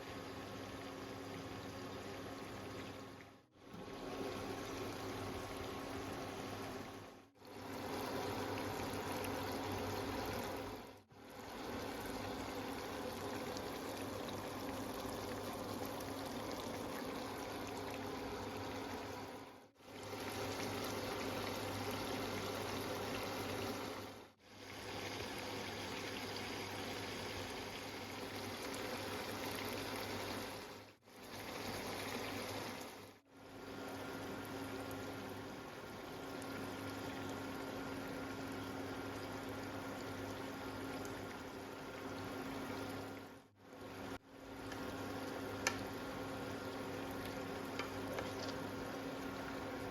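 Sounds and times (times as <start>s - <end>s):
meat bubbling and sizzling: 0.0s - 49.9s.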